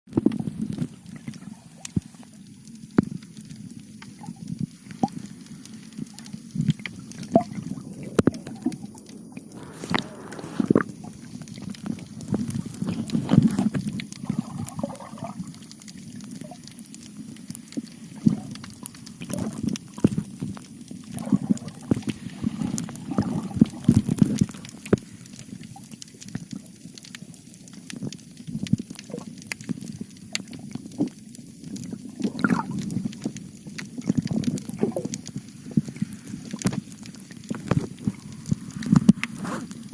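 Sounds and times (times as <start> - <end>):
sharp clicks and pops: 0.1 - 39.9
seawater sloshing and gurgling: 6.7 - 15.6, 18.0 - 25.9, 32.0 - 33.4, 34.0 - 39.9.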